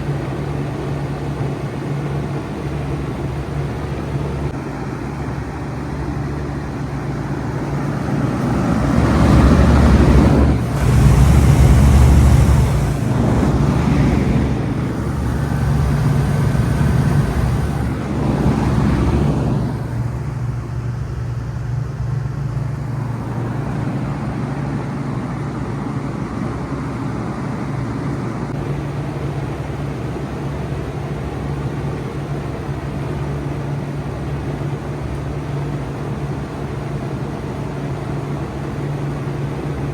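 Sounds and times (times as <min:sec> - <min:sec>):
heat pump humming: 0:00.0 - 0:39.9
rushing noise: 0:02.7 - 0:29.4.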